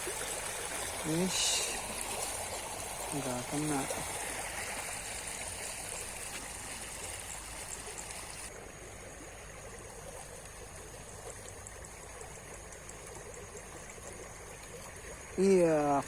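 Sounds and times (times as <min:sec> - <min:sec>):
river water rushing: 0:00.0 - 0:08.1.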